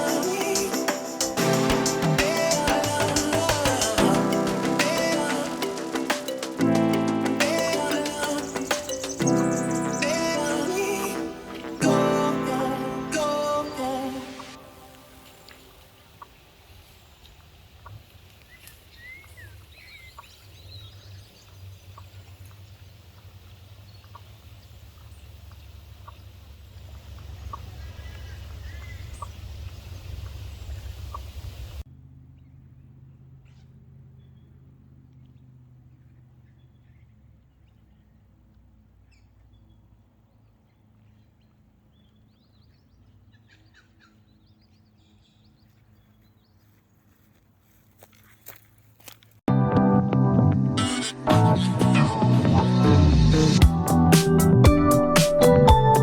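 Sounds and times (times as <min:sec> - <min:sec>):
bird chirps: 0:07.5 - 0:12.4, 0:13.2 - 0:22.9, 0:23.8 - 0:31.7
birds whistling: 0:07.8 - 0:10.9, 0:18.5 - 0:21.2.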